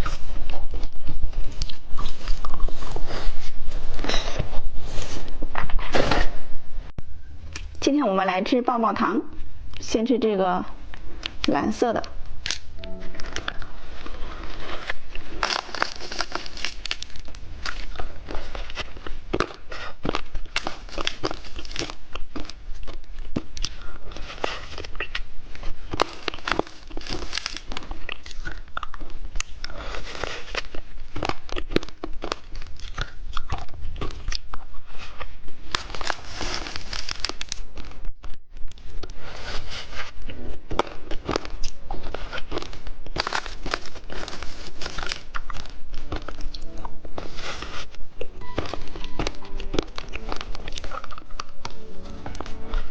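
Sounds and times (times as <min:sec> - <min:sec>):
hard candy being crunched: 0:12.2 - 0:34.7, 0:35.6 - 0:38.0, 0:40.7 - 0:52.9.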